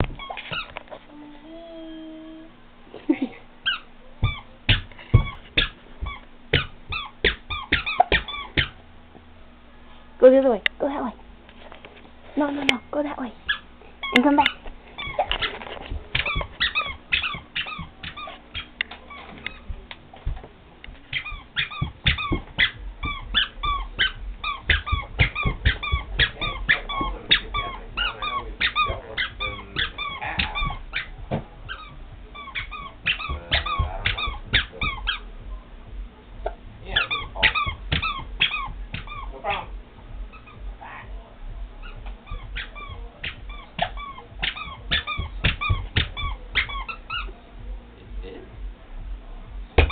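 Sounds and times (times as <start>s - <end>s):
squeaker shoe chirping: 0.1s - 0.8s, 3.6s - 8.8s, 13.4s - 20.4s, 21.1s - 35.4s, 36.9s - 39.7s, 40.3s - 40.6s, 41.8s - 47.4s
soft footfall thuds: 4.2s - 8.8s, 14.3s - 49.9s.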